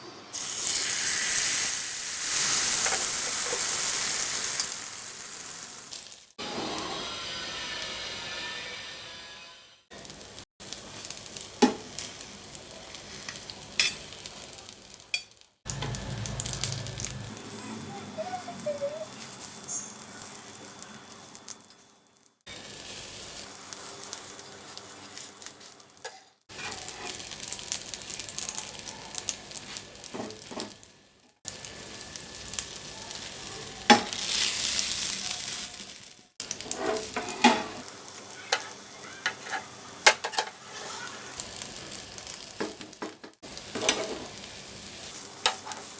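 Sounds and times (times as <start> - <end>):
egg sizzling in a frying pan: 0.3 - 6.4, 10.0 - 45.9
spatula scraping and tapping pan: 36.6 - 37.8, 38.5 - 40.6, 45.4 - 45.9.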